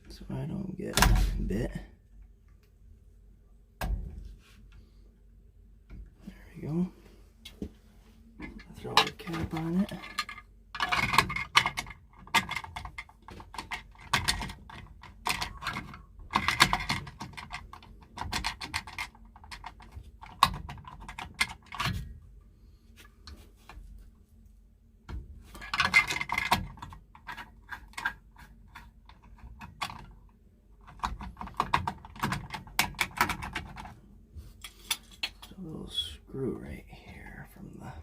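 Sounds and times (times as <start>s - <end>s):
metal parts and tools clinking: 8.4s - 17.6s.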